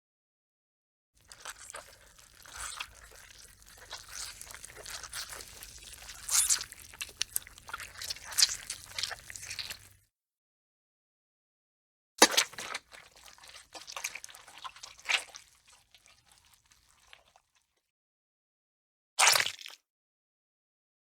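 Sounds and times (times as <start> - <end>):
wet crunching and tearing: 1.2 - 10.0, 12.2 - 17.2, 19.2 - 19.8.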